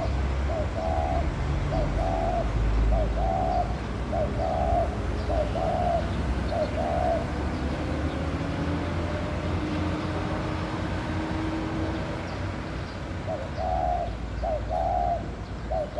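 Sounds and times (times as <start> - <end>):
dove cooing: 0.0 - 7.4, 13.2 - 15.9.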